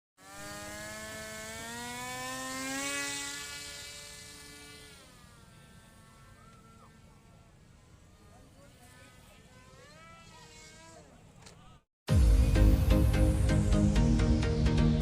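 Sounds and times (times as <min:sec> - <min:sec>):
motor-like whirring whine: 0:00.2 - 0:11.8.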